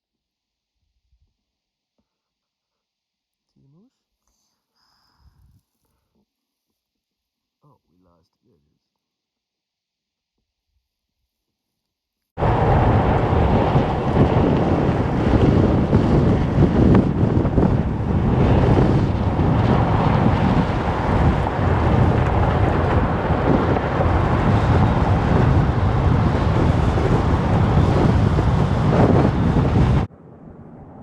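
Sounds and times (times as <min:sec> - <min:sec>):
wind buffeting microphone: 0:12.4 - 0:31.0.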